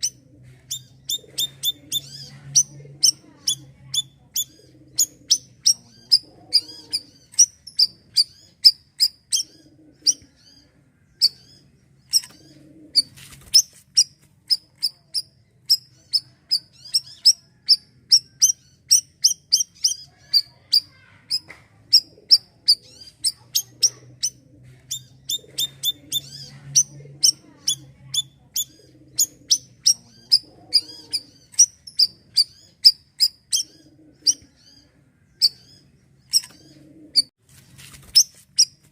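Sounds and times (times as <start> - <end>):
songbird chirping: 0.0 - 38.9.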